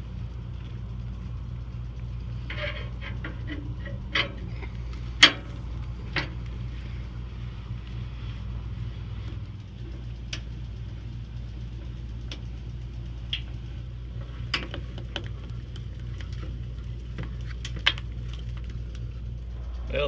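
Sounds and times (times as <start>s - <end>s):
low engine hum: 0.0s - 20.0s.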